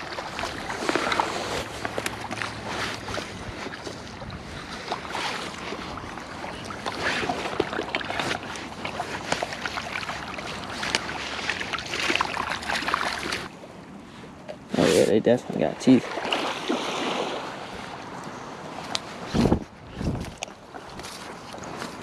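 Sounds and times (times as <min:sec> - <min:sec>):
surf washing along shore: 0:00.0 - 0:20.2
wind on microphone: 0:18.6 - 0:22.0.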